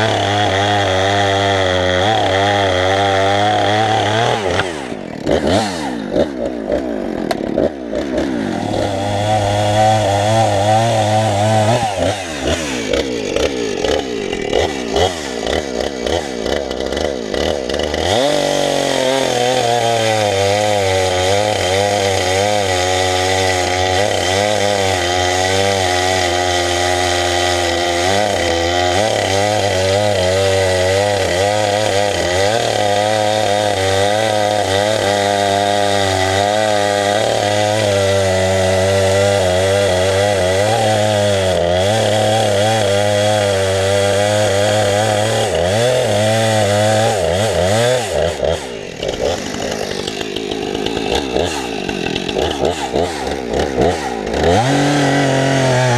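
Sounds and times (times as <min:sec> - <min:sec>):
chainsaw cutting logs: 0:00.0 - 0:55.9.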